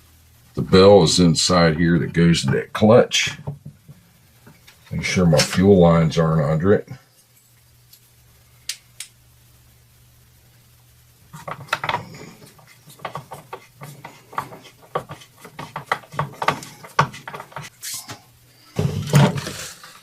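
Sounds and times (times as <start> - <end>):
faint steady hum: 0.0 - 20.0
small parts clicking and knocking: 11.4 - 17.7.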